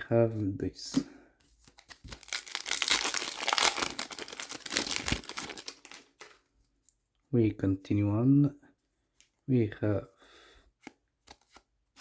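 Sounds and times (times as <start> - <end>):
foil wrapper tearing and crinkling: 1.8 - 6.4.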